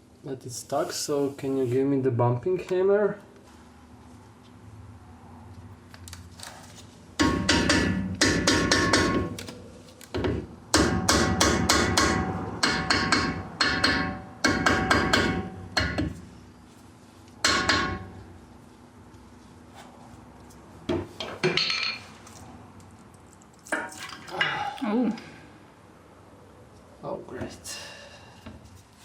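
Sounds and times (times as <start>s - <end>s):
hammer blows on metal: 10.7s - 16.2s.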